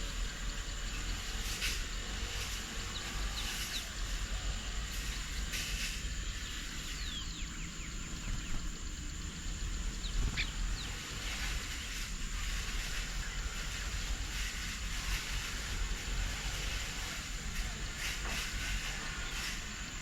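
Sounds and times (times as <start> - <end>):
low rumble and hiss: 0.0 - 20.0.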